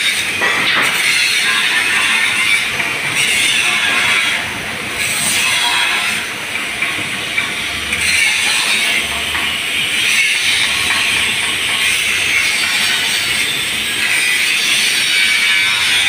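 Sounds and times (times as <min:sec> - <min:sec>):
angle grinder grinding pipe: 0:07.9 - 0:16.0.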